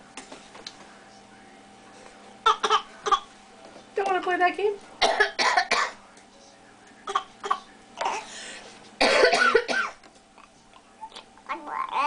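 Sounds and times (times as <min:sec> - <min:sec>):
person coughing: 0:05.0 - 0:06.0, 0:09.0 - 0:10.0.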